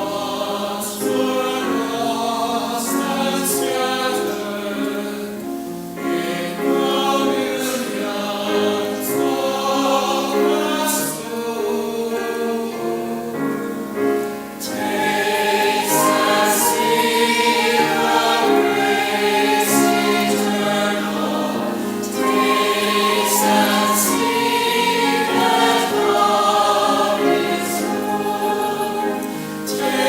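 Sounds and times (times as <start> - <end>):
choir singing sacred music: 0.0 - 30.0.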